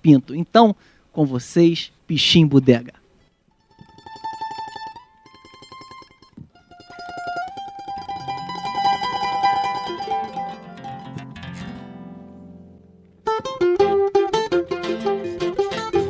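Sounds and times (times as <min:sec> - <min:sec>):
mandolin tremolo melody: 0:03.5 - 0:16.0
guitar low bass notes: 0:05.6 - 0:16.0.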